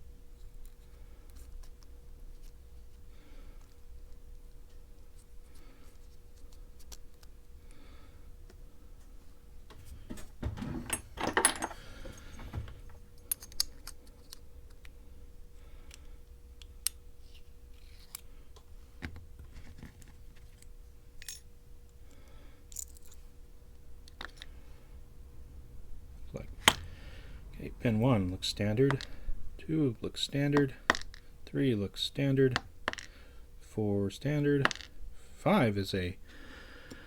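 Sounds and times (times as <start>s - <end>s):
metal lock parts clicking: 10.4s - 14.9s
jingling clatter: 10.6s - 12.8s.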